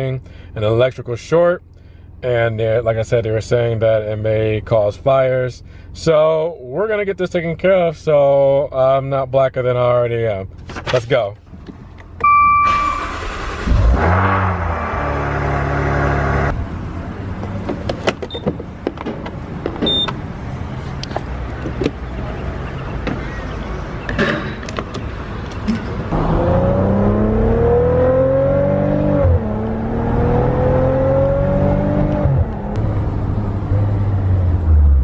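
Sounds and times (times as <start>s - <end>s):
car engine accelerating: 13.0s - 17.4s, 25.9s - 35.0s.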